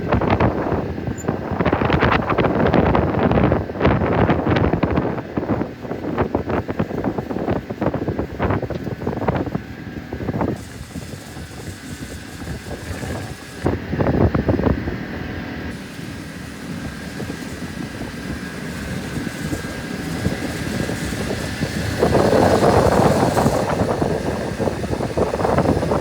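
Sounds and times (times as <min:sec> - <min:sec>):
boat engine running: 0:00.0 - 0:26.0.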